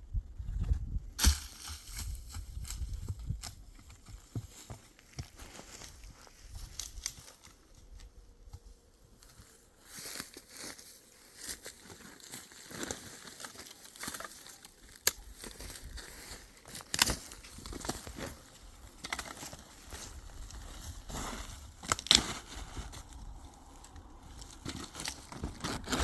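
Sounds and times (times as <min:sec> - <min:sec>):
dry brush rustling and crackling: 0:01.2 - 0:26.0
twigs snapping: 0:12.8 - 0:20.6, 0:21.8 - 0:26.0.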